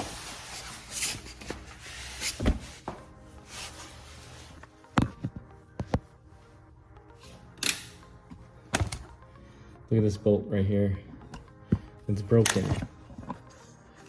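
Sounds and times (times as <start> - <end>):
rustling handling noise: 0.0 - 6.1.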